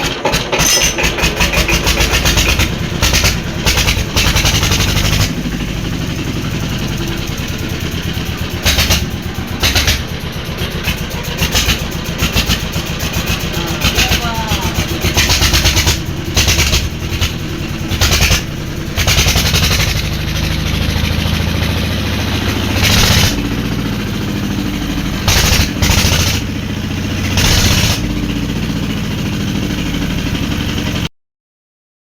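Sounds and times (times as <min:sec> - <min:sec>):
diesel engine chugging and revving: 0:00.0 - 0:31.1.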